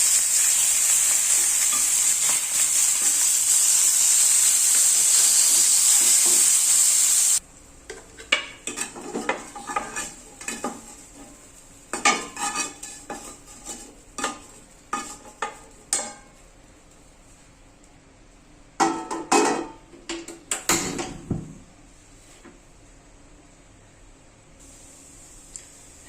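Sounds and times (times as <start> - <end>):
food sizzling in a pan: 0.0 - 7.4, 8.6 - 16.0, 24.6 - 26.0
utensil clinking and scraping cookware: 0.5 - 3.3, 7.9 - 16.3.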